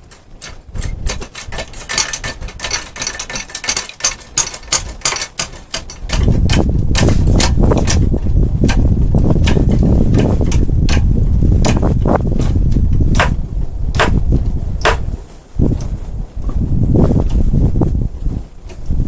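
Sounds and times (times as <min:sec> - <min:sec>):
loud low rumbling noise: 0:05.8 - 0:19.0.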